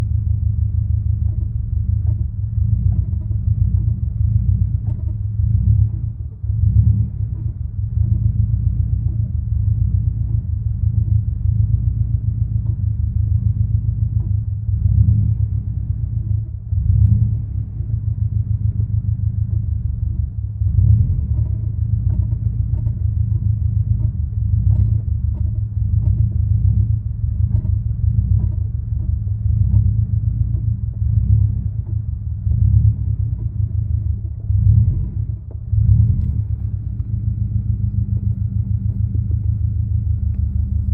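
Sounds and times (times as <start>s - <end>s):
engine idling: 0.0s - 40.9s
clutch rattle: 1.2s - 8.1s, 21.2s - 40.9s.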